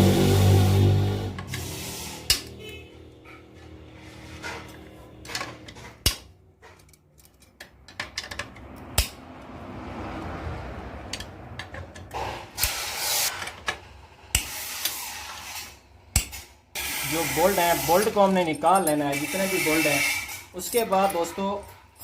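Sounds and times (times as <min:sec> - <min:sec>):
wrench scraping and rattling: 0:04.0 - 0:09.1, 0:11.1 - 0:22.0
metal tools clicking and clinking: 0:05.2 - 0:09.1, 0:17.7 - 0:22.0.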